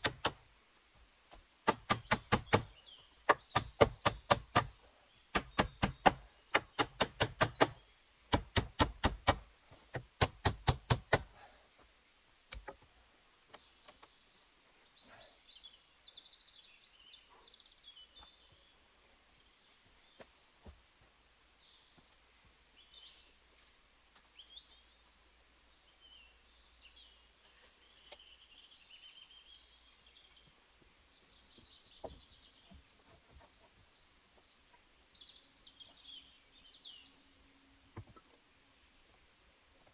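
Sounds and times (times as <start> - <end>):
tool striking wood: 0.0 - 0.4, 1.6 - 2.7, 3.3 - 11.3
small birds chirping: 0.0 - 39.9.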